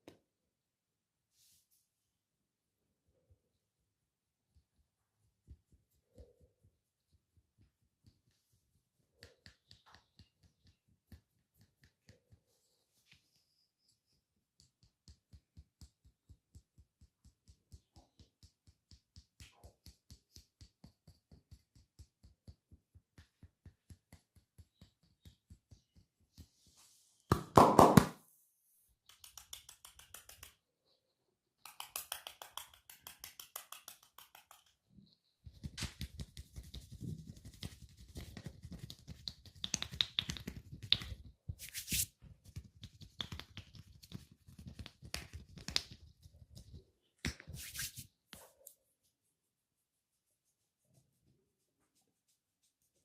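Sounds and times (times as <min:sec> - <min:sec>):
patting and slapping strokes: 0:04.5 - 0:28.2, 0:29.0 - 0:30.7, 0:31.6 - 0:53.0
hand massage thuds: 0:27.3 - 0:28.2.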